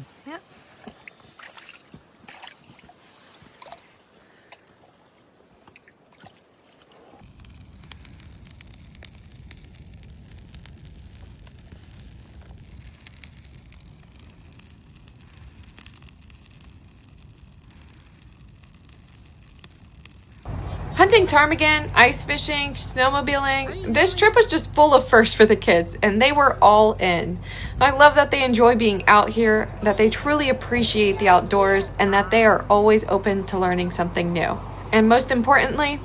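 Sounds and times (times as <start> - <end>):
water dripping and trickling: 0.8 - 20.5
steady low rumble: 7.4 - 36.0.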